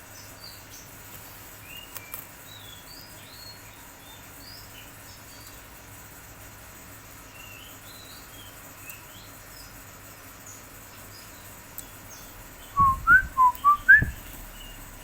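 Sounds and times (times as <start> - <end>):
background hiss: 0.0 - 15.0
small bird chirping: 1.6 - 5.7, 7.2 - 14.9.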